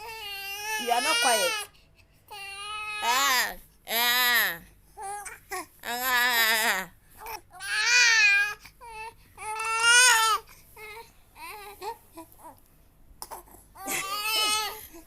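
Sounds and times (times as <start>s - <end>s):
baby crying: 0.0s - 1.7s, 5.0s - 12.6s, 13.3s - 15.0s
baby whimpering: 13.2s - 15.0s.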